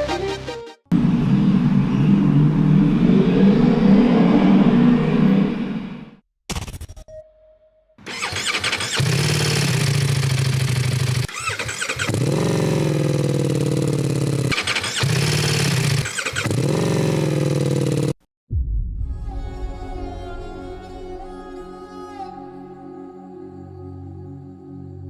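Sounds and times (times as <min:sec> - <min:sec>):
motorcycle engine revving: 0:08.1 - 0:18.2.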